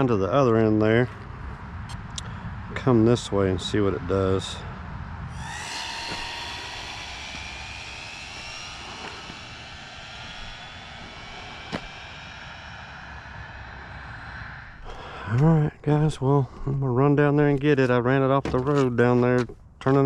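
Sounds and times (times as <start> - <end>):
rc car motor whine: 5.3 - 13.5.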